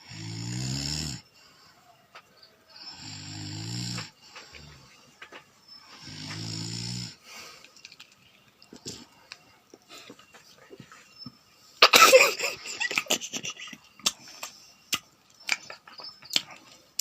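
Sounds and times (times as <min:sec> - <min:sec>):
person snoring: 0:00.0 - 0:01.3, 0:02.8 - 0:04.9, 0:06.0 - 0:07.2.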